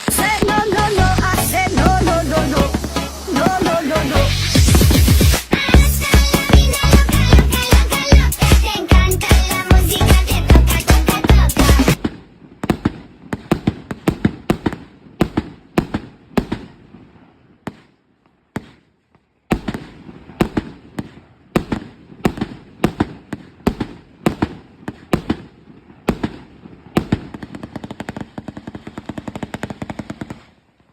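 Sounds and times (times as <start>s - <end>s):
fireworks firing sharp shots: 0.0s - 30.8s
music: 0.1s - 12.0s.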